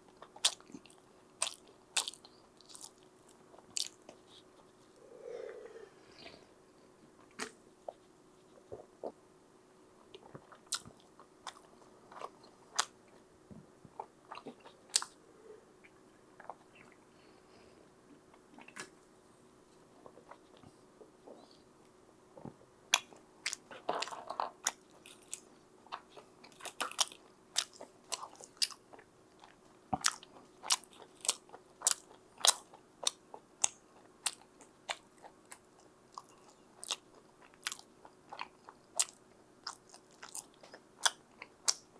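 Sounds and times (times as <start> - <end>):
crunchy chewing: 0.2 - 5.6, 22.9 - 41.9.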